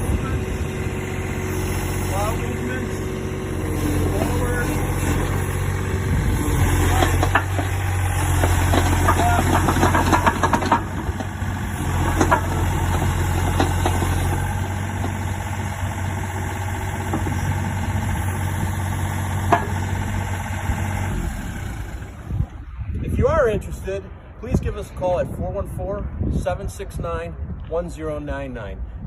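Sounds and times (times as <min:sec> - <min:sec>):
diesel engine running: 0:00.0 - 0:23.0
rattling and knocks: 0:03.7 - 0:18.2, 0:19.3 - 0:20.3.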